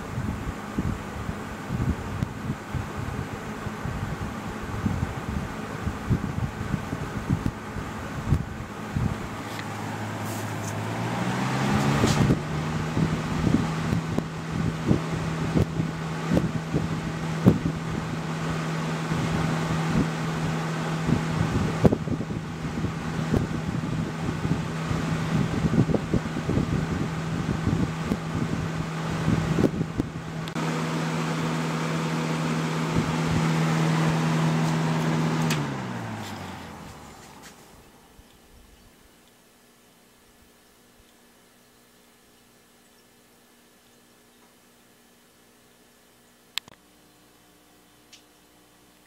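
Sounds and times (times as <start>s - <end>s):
box fan humming: 0.0s - 49.0s
fan clicks and rattles: 0.4s - 39.4s, 46.5s - 46.8s.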